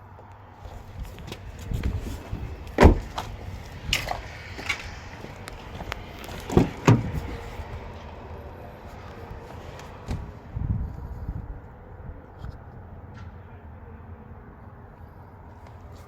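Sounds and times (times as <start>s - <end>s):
car doors clunking shut: 1.2s - 7.8s, 9.8s - 10.4s.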